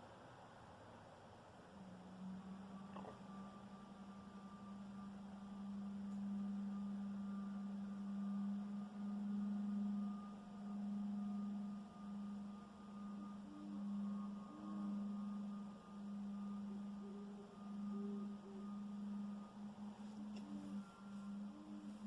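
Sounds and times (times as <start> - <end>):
low hum in the sky: 0.0 - 22.0.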